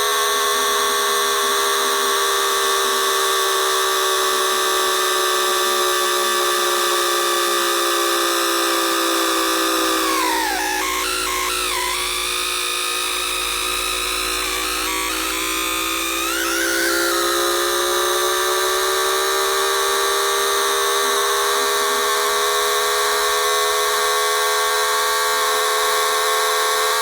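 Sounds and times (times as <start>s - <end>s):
electrical inverter whine: 0.0s - 27.0s.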